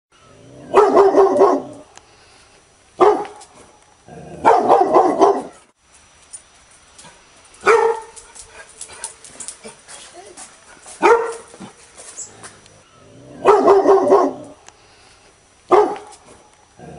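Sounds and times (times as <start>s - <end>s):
dog barking angrily: 0.6s - 1.8s, 3.0s - 5.6s, 7.6s - 9.8s, 11.0s - 11.8s, 13.4s - 14.6s, 15.7s - 16.4s.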